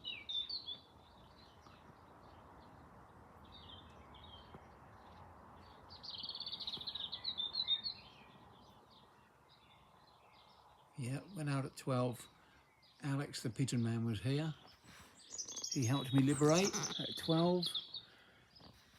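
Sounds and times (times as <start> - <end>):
small bird chirping: 0.0 - 2.8, 3.4 - 11.3, 14.6 - 18.8
outdoor background noise: 0.0 - 18.9.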